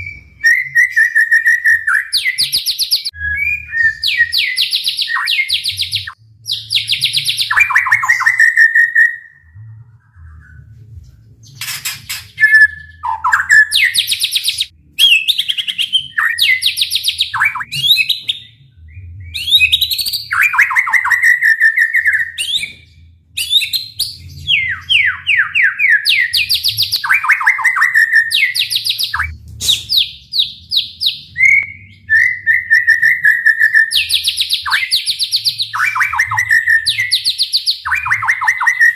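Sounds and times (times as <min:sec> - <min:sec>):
songbird singing rapid whistles: 0:00.0 - 0:09.5, 0:11.4 - 0:38.9.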